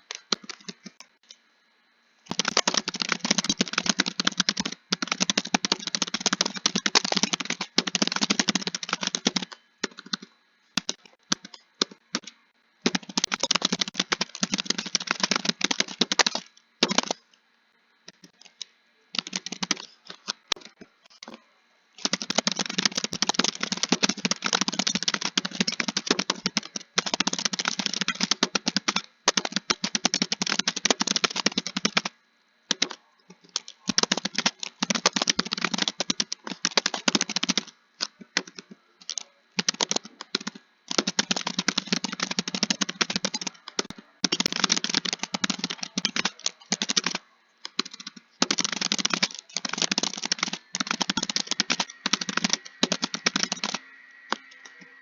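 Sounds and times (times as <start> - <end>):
computer keyboard typing: 0.0 - 1.1, 2.3 - 17.2, 18.1 - 21.3, 22.0 - 55.0.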